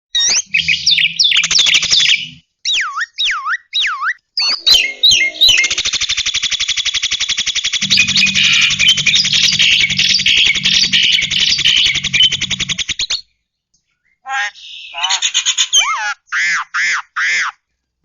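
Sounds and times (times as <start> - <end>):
whistled songbird chirps: 0.2 - 6.8, 7.6 - 13.3
fast rattling bird trill: 0.2 - 13.2
swooping whistles: 0.4 - 6.8, 7.7 - 13.2.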